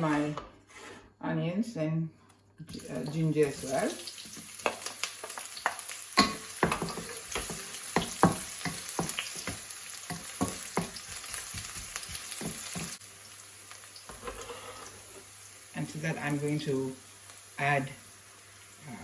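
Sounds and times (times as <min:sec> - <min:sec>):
utensil scraping a pan: 0:00.0 - 0:01.2, 0:14.1 - 0:15.2
food sizzling in hot oil: 0:02.7 - 0:19.0.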